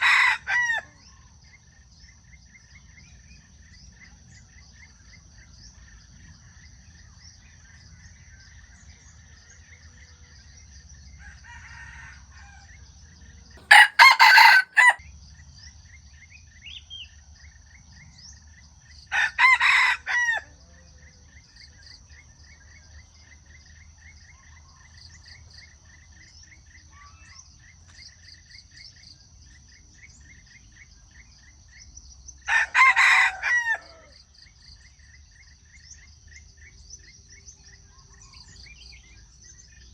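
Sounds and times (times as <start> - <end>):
rooster crowing: 13.6 - 15.0, 32.5 - 34.2.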